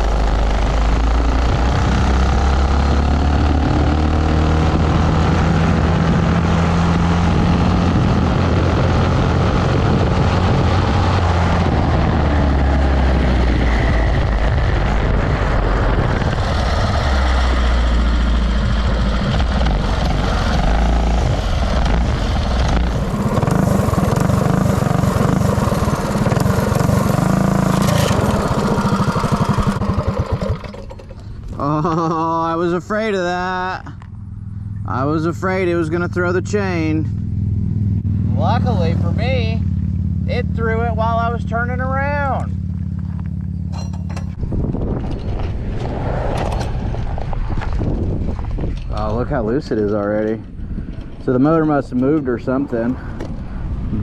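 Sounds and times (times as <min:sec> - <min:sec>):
mini bike engine revving hard: 0:00.0 - 0:32.2.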